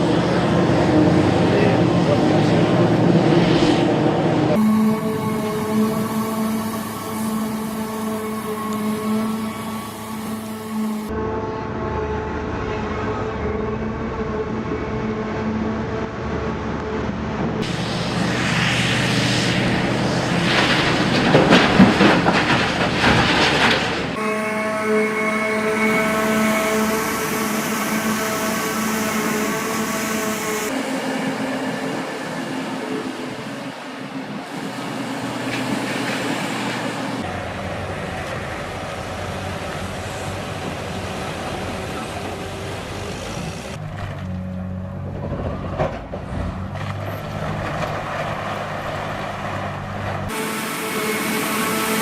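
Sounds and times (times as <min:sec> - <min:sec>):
diesel engine running: 0:16.7 - 0:24.2
machine hissing and clatter: 0:17.6 - 0:24.2.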